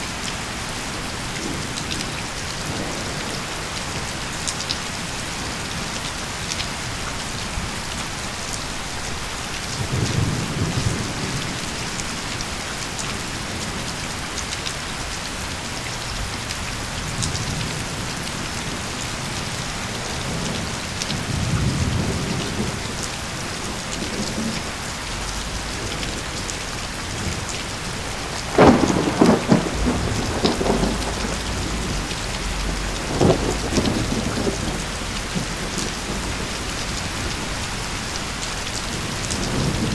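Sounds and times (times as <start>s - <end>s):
steady rain: 0.0s - 39.9s
crackling thunderclap: 9.8s - 12.2s, 16.2s - 39.9s
thunder rolling: 20.2s - 39.9s.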